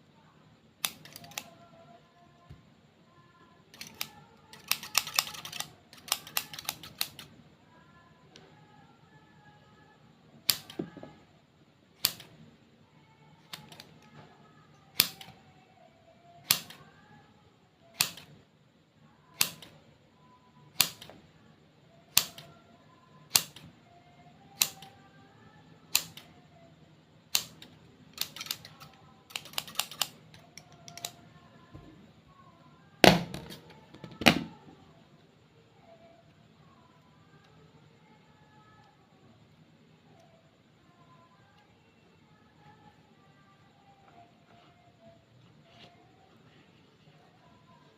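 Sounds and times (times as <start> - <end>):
sharp clicks: 0.8 - 1.6, 3.7 - 7.3, 10.5 - 11.0, 12.0 - 12.4, 13.4 - 14.1, 16.4 - 16.8, 18.0 - 18.3, 19.3 - 19.8, 20.7 - 21.2, 22.1 - 22.5, 23.3 - 23.7, 24.6 - 25.0, 25.9 - 26.4, 27.3 - 31.2.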